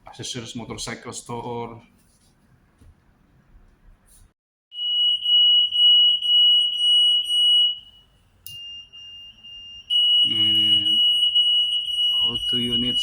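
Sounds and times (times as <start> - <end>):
anti-theft gate alarm beeping: 4.7 - 13.0.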